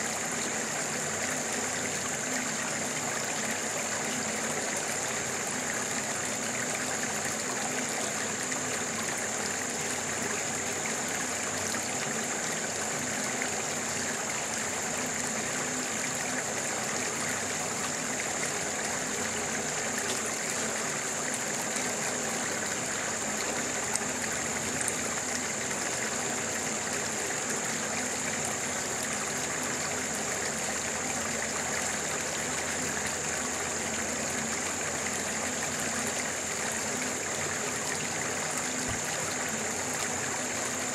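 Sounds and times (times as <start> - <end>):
stream flowing: 0.0 - 40.9.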